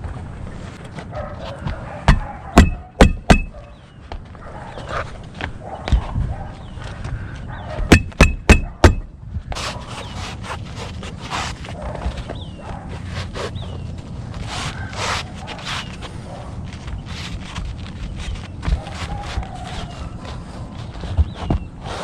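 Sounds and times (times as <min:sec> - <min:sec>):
ringing hammer strikes: 0:02.1 - 0:03.6, 0:07.9 - 0:09.1
roof tiles scraping: 0:09.5 - 0:22.0.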